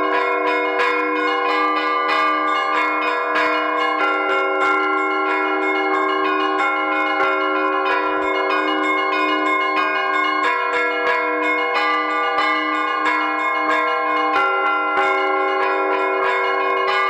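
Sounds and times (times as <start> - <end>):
church bells pealing: 0.0 - 17.0.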